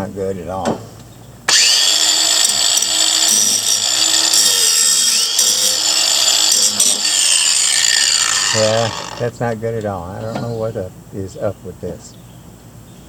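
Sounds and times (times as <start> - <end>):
angle grinder on steel blade: 1.5 - 9.3.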